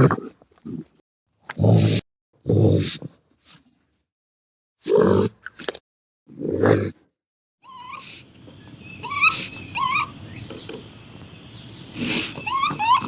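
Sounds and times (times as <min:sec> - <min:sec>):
raccoon squealing: 0:07.6 - 0:13.0
breathy hiss: 0:07.8 - 0:13.0.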